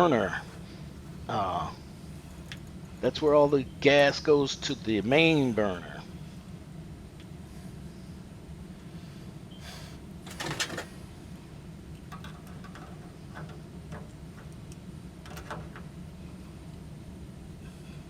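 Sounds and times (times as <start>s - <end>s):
steady low hum: 0.0s - 18.0s
metal scraping rattle: 0.2s - 2.6s, 10.2s - 11.0s.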